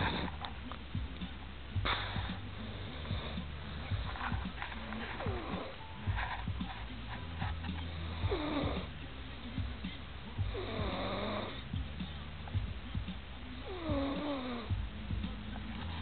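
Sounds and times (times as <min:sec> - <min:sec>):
whistling snoring: 0:07.8 - 0:09.0, 0:10.4 - 0:11.7, 0:13.6 - 0:14.7.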